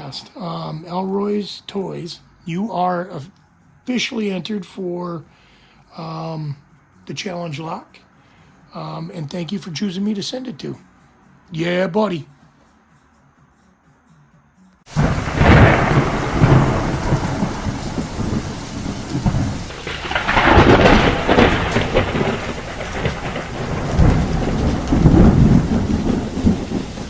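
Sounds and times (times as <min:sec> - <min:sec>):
heavy rain: 0:14.9 - 0:27.0
rolling thunder: 0:14.9 - 0:27.0.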